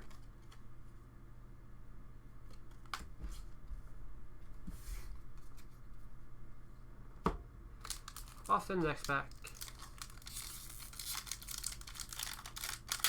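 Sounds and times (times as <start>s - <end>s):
cards brushing together: 9.4s - 13.0s.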